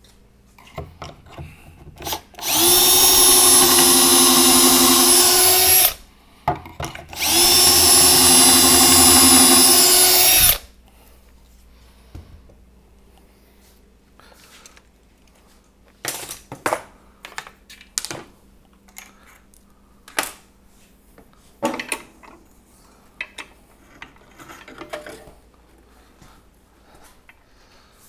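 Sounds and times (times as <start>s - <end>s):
tools and wood knocking: 0.6s - 5.9s, 6.5s - 10.6s.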